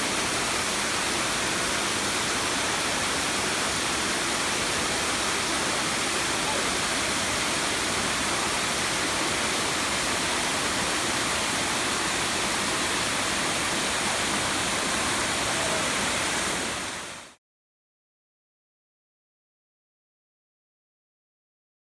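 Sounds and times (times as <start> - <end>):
waterfall rushing: 0.0 - 17.4.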